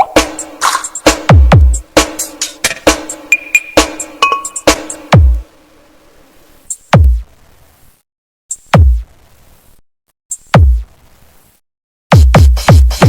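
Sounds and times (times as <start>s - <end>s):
heavy bass kick booms: 1.3s - 1.8s, 7.0s - 7.2s, 12.1s - 13.0s.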